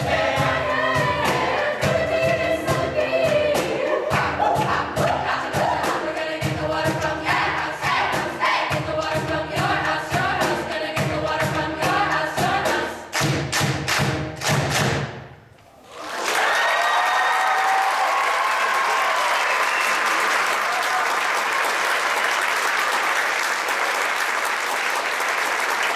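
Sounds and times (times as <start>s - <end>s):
choir singing: 0.0s - 13.2s
sharp thumping beat: 0.0s - 15.4s
audience applause: 15.8s - 25.9s.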